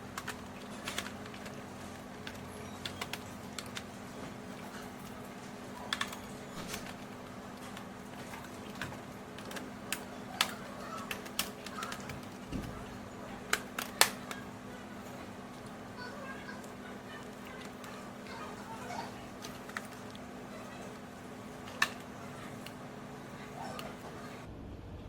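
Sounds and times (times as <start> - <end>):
plastic parts clicking and tapping: 0.0 - 5.2, 5.8 - 14.5, 15.6 - 20.8, 21.6 - 22.8.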